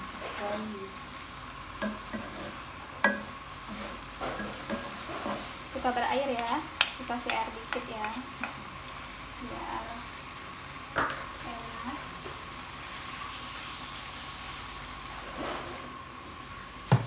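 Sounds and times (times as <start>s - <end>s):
vegetables sizzling in a pan: 0.0s - 17.0s
utensil knocking on pan: 1.8s - 2.4s, 3.0s - 3.3s, 6.4s - 8.6s.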